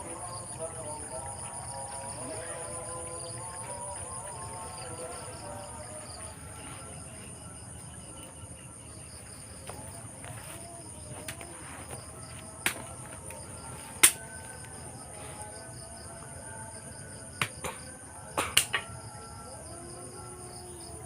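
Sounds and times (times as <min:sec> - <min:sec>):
night insects trilling: 0:00.0 - 0:21.0.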